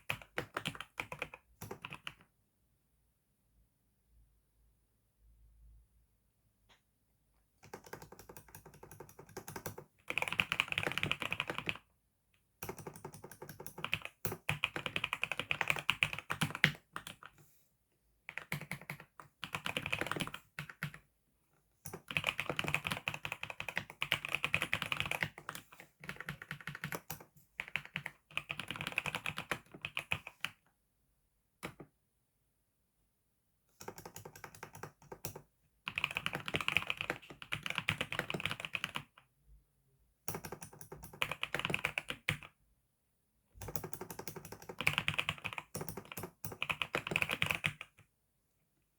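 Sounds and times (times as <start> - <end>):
typing on computer keyboard: 0.0 - 2.2, 7.6 - 11.8, 12.6 - 17.3, 18.3 - 21.0, 21.8 - 30.6, 33.8 - 39.2, 40.3 - 42.5, 43.6 - 48.0.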